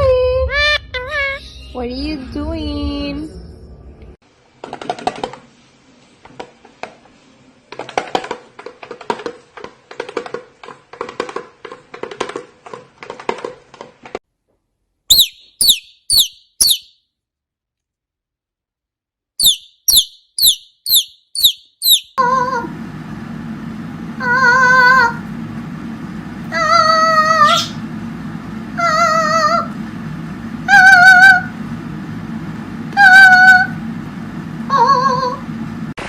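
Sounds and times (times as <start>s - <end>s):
parrot high chirps: 15.1s - 17.0s, 19.4s - 22.2s.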